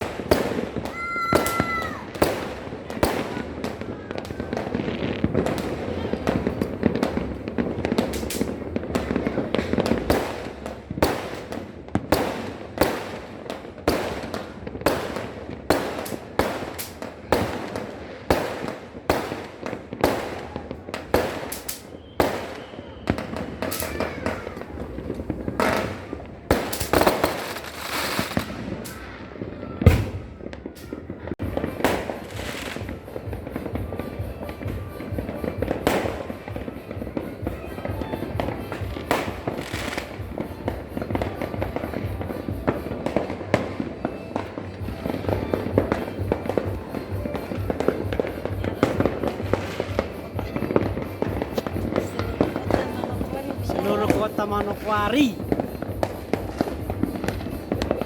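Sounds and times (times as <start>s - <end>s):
firecrackers banging: 0.0s - 58.0s
firework whistle: 21.4s - 26.1s
voices: 33.8s - 56.0s.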